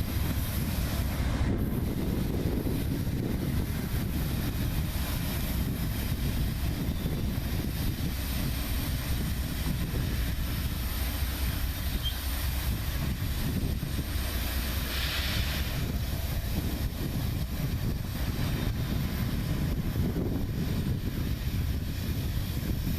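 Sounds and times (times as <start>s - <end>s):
freight train rumbling: 0.0s - 22.9s
wind buffeting microphone: 0.0s - 22.9s
brief high hiss: 10.2s - 17.0s.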